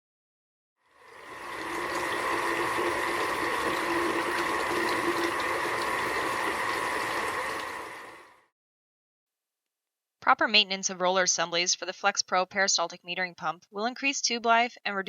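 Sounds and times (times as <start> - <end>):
running water rushing: 1.0 - 8.4.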